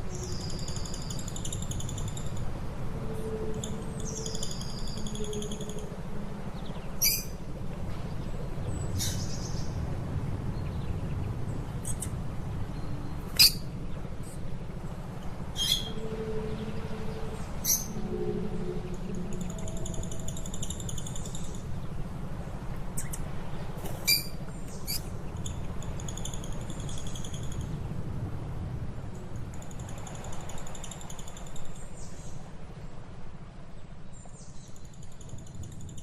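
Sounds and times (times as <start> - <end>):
birds twittering and chirping: 3.5 - 22.2, 22.8 - 27.7.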